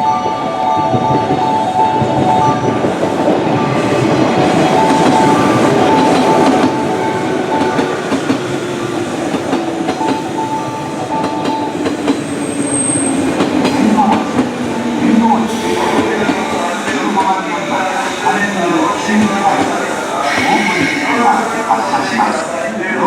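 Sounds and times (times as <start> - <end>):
electric train running: 1.0 - 23.0
high squeal: 17.8 - 22.6.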